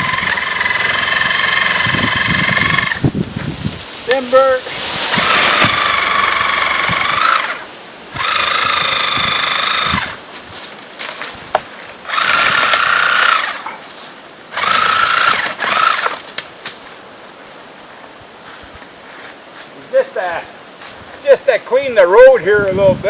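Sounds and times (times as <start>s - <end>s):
reciprocating saw cutting wood: 0.0s - 3.1s, 4.1s - 10.2s, 12.1s - 13.8s, 14.6s - 16.2s
wood cracking and snapping: 10.7s - 13.5s, 14.6s - 16.8s.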